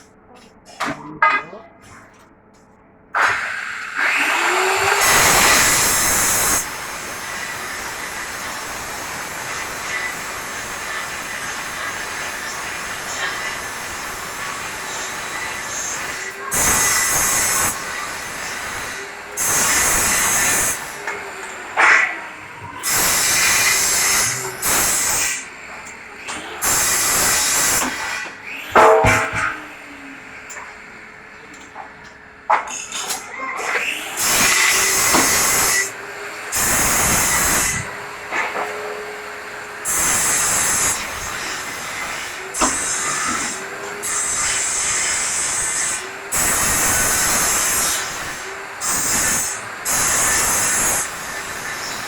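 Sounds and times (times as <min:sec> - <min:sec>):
loud hissing bursts: 0:04.4 - 0:21.0, 0:22.8 - 0:25.4, 0:26.6 - 0:28.0, 0:34.1 - 0:37.9, 0:39.8 - 0:52.0.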